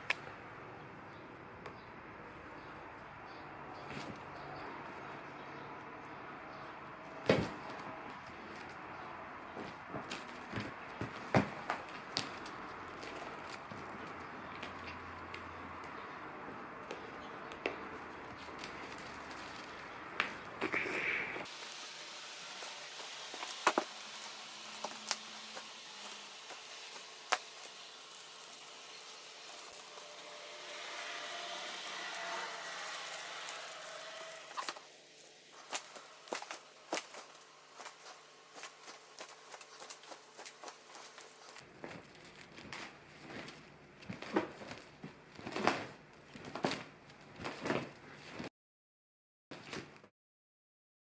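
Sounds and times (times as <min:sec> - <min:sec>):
cats rustling and scuffing: 0:18.0 - 0:20.5, 0:21.4 - 0:33.9, 0:34.5 - 0:48.5.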